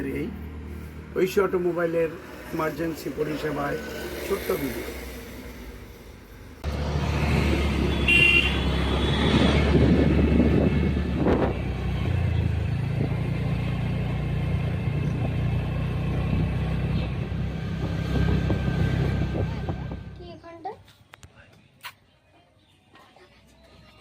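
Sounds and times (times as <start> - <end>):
vehicle engine running: 9.5 - 20.4.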